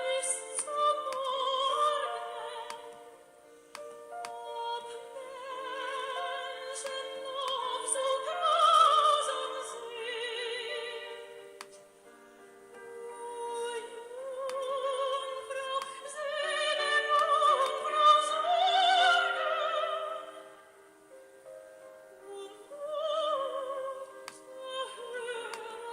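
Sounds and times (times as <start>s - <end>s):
operatic singing voice with vibrato: 0.0s - 3.0s, 4.2s - 11.4s, 13.0s - 20.6s, 22.2s - 25.9s.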